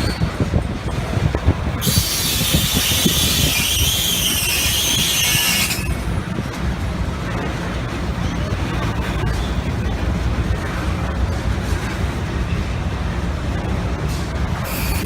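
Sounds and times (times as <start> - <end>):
wheel squeal: 0.0 - 0.4, 1.8 - 6.1, 14.7 - 15.0
freight train rumbling: 0.0 - 15.0.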